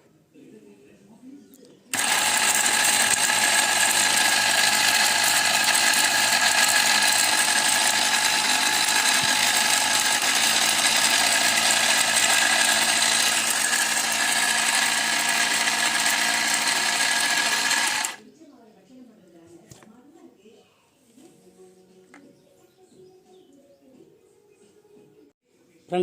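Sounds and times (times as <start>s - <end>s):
mixer grinder motor whine: 1.9s - 18.2s.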